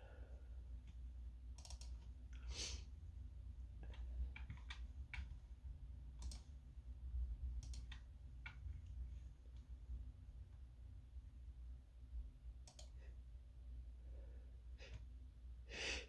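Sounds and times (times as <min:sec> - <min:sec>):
low steady hum: 0:00.0 - 0:16.0
computer keys clicking: 0:00.8 - 0:02.1, 0:03.9 - 0:05.4, 0:06.1 - 0:06.6, 0:07.6 - 0:08.6, 0:12.6 - 0:13.0.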